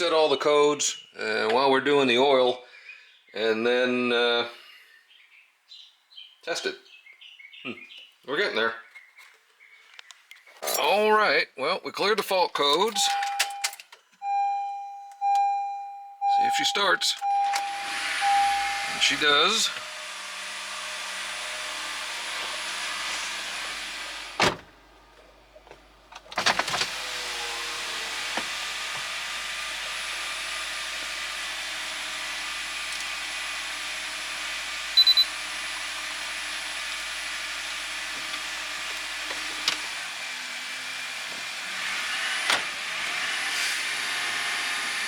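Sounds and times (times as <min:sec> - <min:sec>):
short high beep: 0:14.2 - 0:19.0, 0:35.0 - 0:35.3
car engine running: 0:17.2 - 0:45.0.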